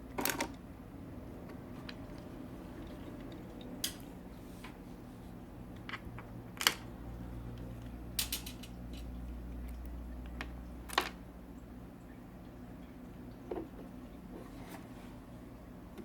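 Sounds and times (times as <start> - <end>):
small parts clicking and tapping: 0.1 - 0.6, 1.5 - 4.0, 5.8 - 6.9, 7.6 - 11.2.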